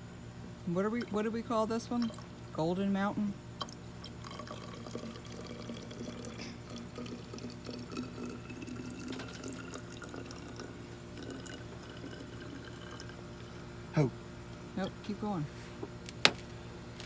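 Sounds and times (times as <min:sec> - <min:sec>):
water pouring into a bottle: 0:01.9 - 0:02.4, 0:03.6 - 0:13.7.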